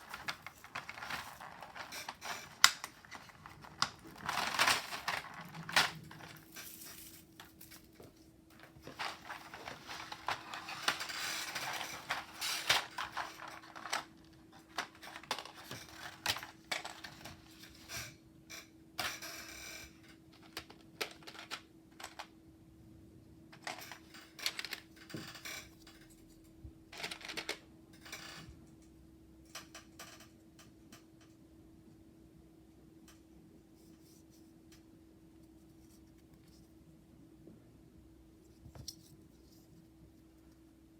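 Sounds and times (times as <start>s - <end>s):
packaging rustling: 0.0s - 17.6s
faint steady hum: 0.0s - 40.9s.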